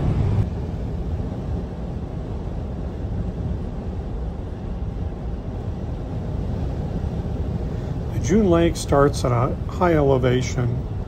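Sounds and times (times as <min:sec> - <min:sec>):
van engine and road noise: 0:00.0 - 0:00.6.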